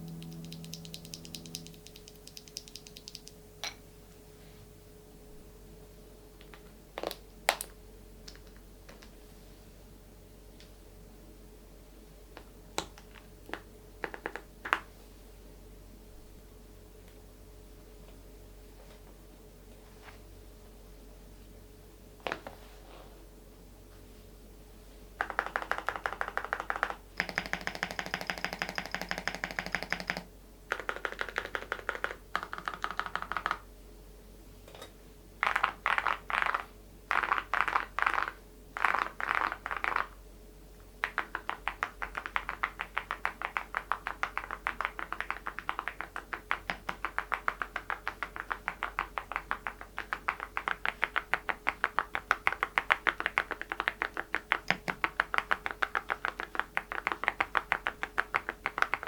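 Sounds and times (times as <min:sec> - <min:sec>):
clacky mechanical keyboard typing: 0:00.1 - 0:03.3, 0:25.2 - 0:33.6, 0:35.4 - 0:40.2, 0:41.0 - 0:59.0.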